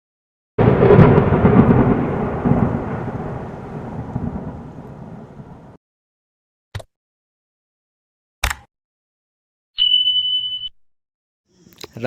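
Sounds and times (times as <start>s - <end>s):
rolling thunderclap: 0.6s - 5.8s.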